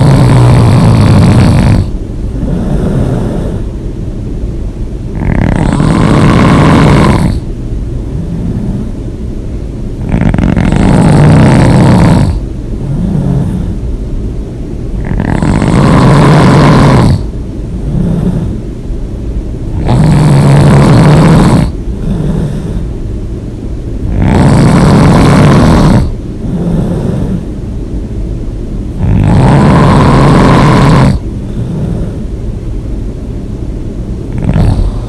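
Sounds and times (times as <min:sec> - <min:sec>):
person snoring loudly: 0:00.0 - 0:03.7, 0:05.1 - 0:07.5, 0:08.1 - 0:09.0, 0:10.0 - 0:13.8, 0:15.0 - 0:18.6, 0:19.7 - 0:22.9, 0:24.0 - 0:27.5, 0:29.0 - 0:32.2, 0:34.3 - 0:35.0.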